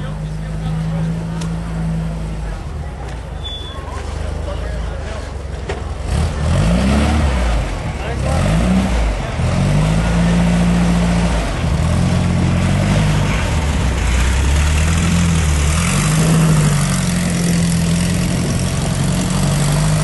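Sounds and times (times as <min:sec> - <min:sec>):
car engine running: 0:04.1 - 0:20.0.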